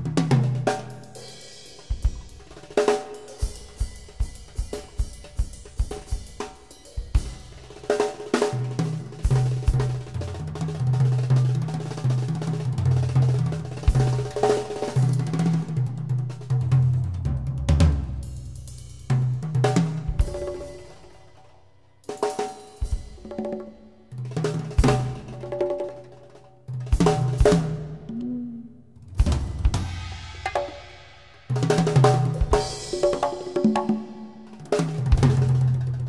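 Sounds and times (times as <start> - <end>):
kick drum with snare and hi-hat: 1.8 - 2.7, 3.4 - 7.9.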